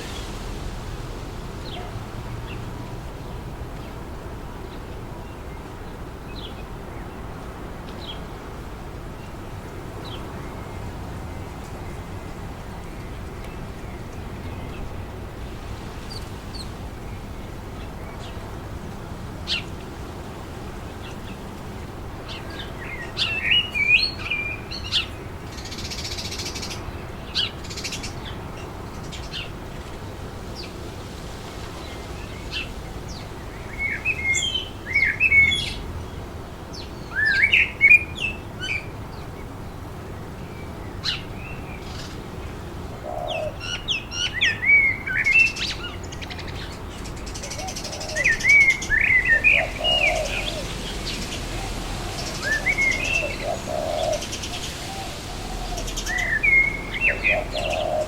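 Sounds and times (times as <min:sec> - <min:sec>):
wind through trees: 0:00.0 - 0:58.0
birds chirping and whistling: 0:47.4 - 0:58.0.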